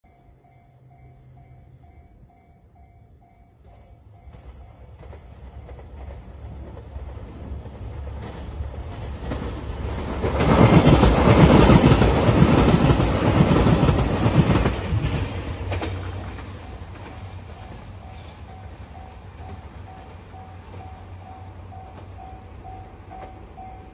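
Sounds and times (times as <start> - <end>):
level crossing warning bell ringing: 0.0 - 6.1, 16.5 - 23.9
diesel train passing: 0.0 - 23.9
wheels clattering over rail joints: 4.4 - 21.1.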